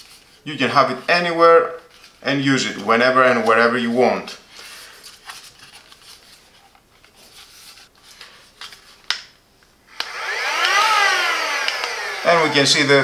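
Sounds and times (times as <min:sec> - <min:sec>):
plastic handling rubbing: 0:01.9 - 0:09.2.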